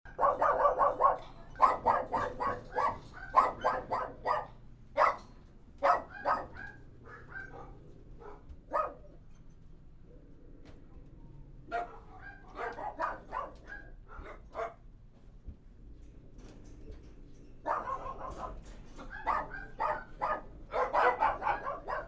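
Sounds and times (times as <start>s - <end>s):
dog barking: 0.1s - 9.2s, 11.7s - 14.8s, 17.6s - 22.0s.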